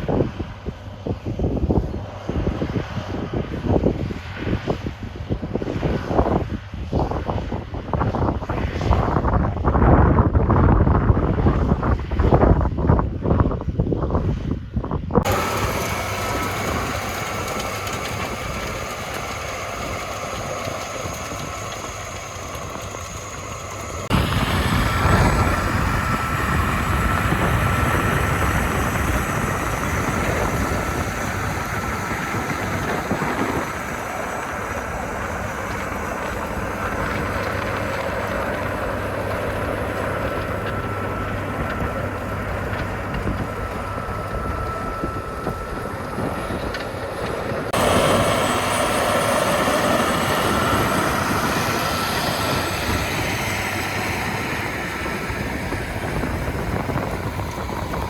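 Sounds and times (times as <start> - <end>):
steady high whine: 15.2 - 58.0
tractor engine under load: 15.2 - 58.0.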